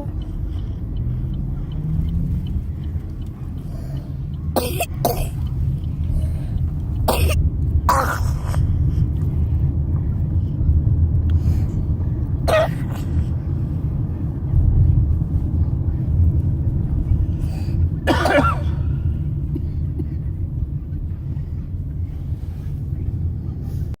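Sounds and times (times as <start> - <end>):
steady low rumble: 0.0 - 24.0
harsh coughs: 4.5 - 5.4, 7.1 - 8.7, 12.4 - 13.3, 18.0 - 20.2.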